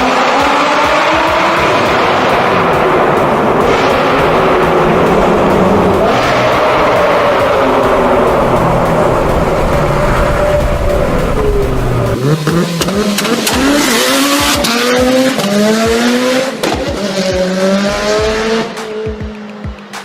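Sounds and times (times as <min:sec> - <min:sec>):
car engine accelerating hard: 0:00.0 - 0:19.9
exhaust cracks: 0:00.9 - 0:19.1.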